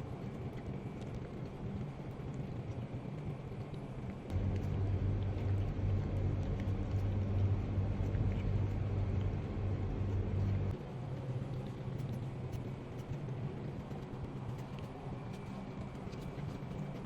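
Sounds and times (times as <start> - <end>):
vehicle engine running: 4.3 - 10.7.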